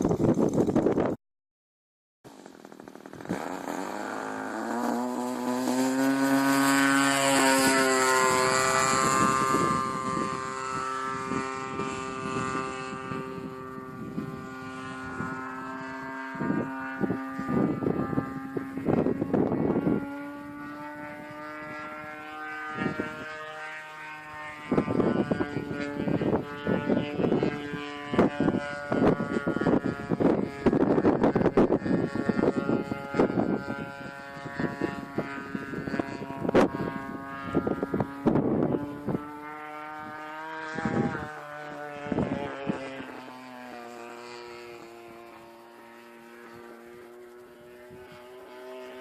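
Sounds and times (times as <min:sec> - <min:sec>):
propeller engine running: 0:00.0 - 0:01.2, 0:02.3 - 0:49.0
wind noise: 0:00.0 - 0:01.2, 0:03.1 - 0:23.5, 0:24.1 - 0:48.8.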